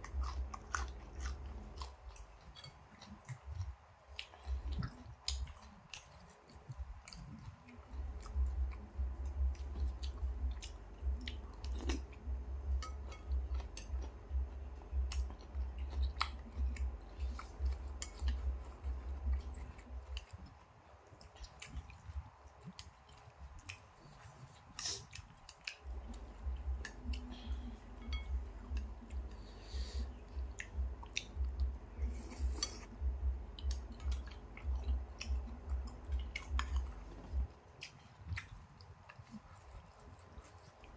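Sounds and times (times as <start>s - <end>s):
chewing noodle soup: 0.0s - 40.9s.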